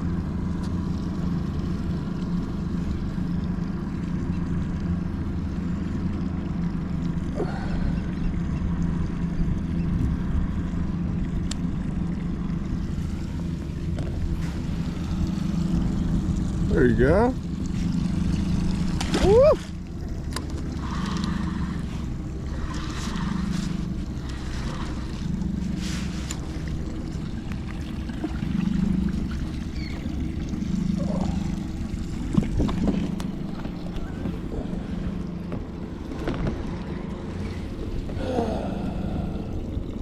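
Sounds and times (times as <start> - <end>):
boat motor rumbling: 0.0 - 40.0.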